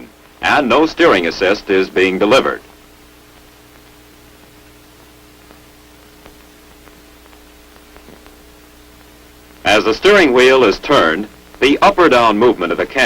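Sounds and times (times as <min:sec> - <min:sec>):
recording hum and hiss: 0:00.0 - 0:13.0
faint ticks: 0:02.6 - 0:09.7.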